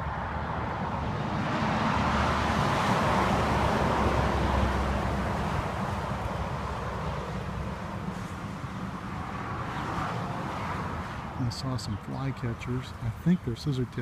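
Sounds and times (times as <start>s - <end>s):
vehicle passing on highway: 0.0s - 14.0s.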